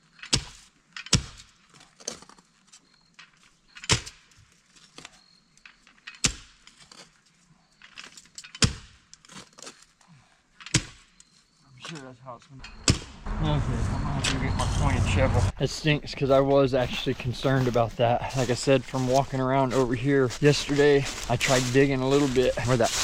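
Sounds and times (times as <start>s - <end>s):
soil and rock crunching: 0.0s - 13.0s, 14.3s - 23.0s
post hole digger striking stones: 0.1s - 2.3s, 3.8s - 4.2s, 6.1s - 7.0s, 8.5s - 9.8s, 10.7s - 11.2s, 12.6s - 13.2s.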